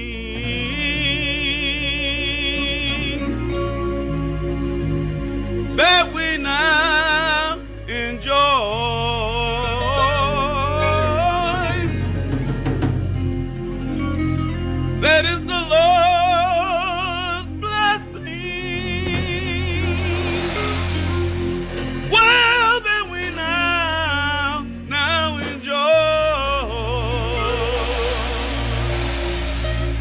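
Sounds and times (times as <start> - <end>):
person singing with vibrato: 0.0 - 12.6, 14.0 - 30.0
bass keyboard and drums: 0.0 - 30.0.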